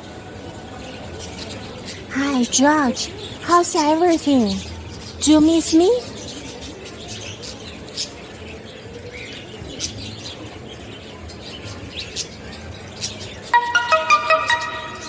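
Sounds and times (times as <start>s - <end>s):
low steady background noise: 0.0s - 15.0s
bird chirps: 5.2s - 15.0s
bright musical notes: 13.5s - 15.0s.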